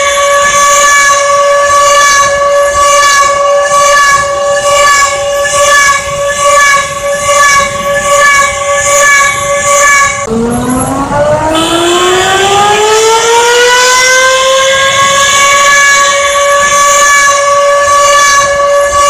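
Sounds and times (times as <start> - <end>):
siren winding up: 0.0 - 19.0
siren chord of tones: 9.2 - 19.0.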